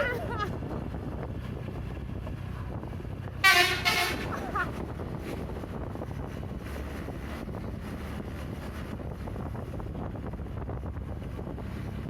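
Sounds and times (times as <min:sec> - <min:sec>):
low vehicle rumble: 0:00.0 - 0:12.0
wind buffeting microphone: 0:00.0 - 0:12.0.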